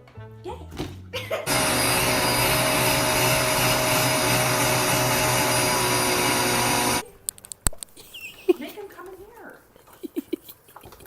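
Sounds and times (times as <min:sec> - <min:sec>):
vacuum cleaner running: 0:01.5 - 0:07.0.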